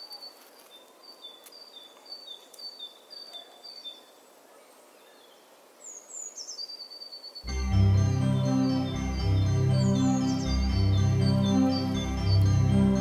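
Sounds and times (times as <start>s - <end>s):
birds chirping: 0.0s - 13.0s
faint outdoor hiss: 0.0s - 13.0s
music: 7.5s - 13.0s.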